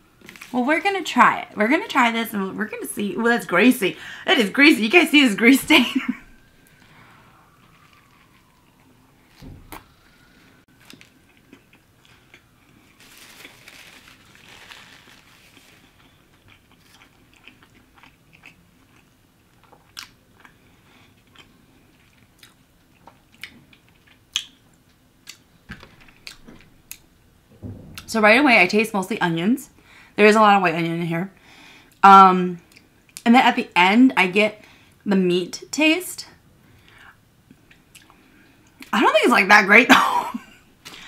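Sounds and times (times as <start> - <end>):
wet chewing: 15.0 - 24.6.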